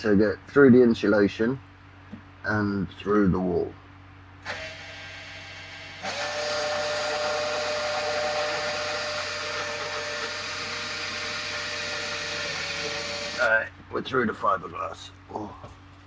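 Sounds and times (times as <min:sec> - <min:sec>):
electric drill whining: 0:04.4 - 0:13.5.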